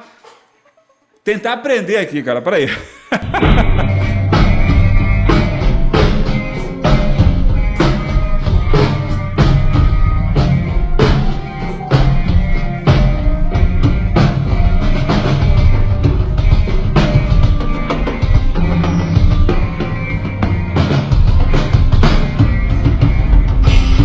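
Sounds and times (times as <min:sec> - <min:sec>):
band playing: 0:03.2 - 0:24.0
kick and snare drum strikes: 0:23.6 - 0:24.0.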